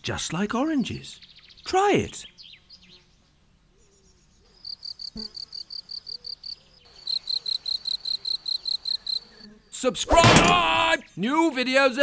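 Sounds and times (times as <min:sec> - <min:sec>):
crickets chirping: 0:04.6 - 0:09.4.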